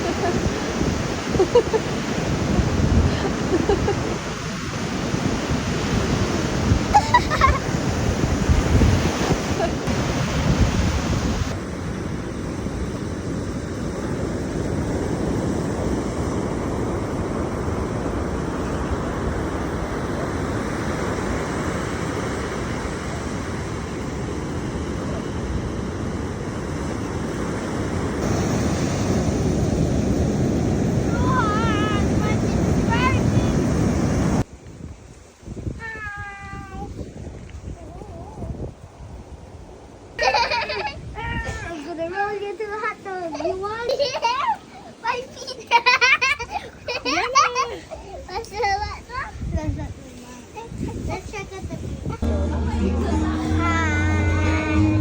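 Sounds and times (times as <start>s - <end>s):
ocean surf breaking: 0.0s - 34.5s, 50.4s - 55.0s
wind on microphone: 0.0s - 43.0s, 47.9s - 55.0s.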